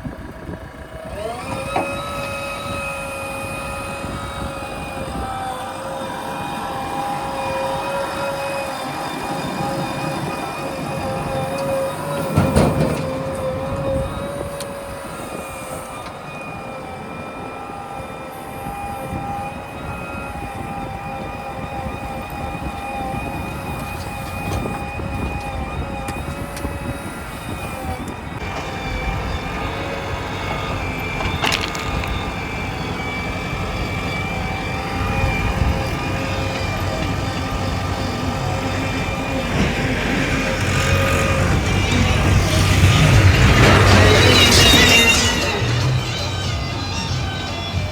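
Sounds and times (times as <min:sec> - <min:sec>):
diesel engines rumbling: 0:00.0 - 0:47.9
high steady whine: 0:28.0 - 0:47.9.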